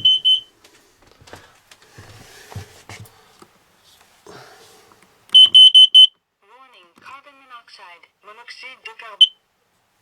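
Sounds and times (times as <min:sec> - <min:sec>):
carbon monoxide alarm beep: 0:00.0 - 0:00.5, 0:05.3 - 0:06.2, 0:09.2 - 0:09.4
soft rustling: 0:00.6 - 0:05.0.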